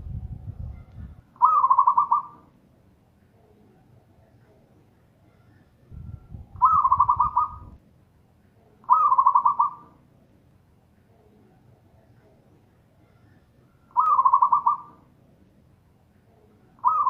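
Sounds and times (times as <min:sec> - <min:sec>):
low rumble: 0:00.0 - 0:01.2, 0:05.9 - 0:07.8
dove cooing: 0:01.4 - 0:02.5, 0:06.6 - 0:07.8, 0:08.8 - 0:10.0, 0:13.0 - 0:15.1, 0:16.8 - 0:17.0.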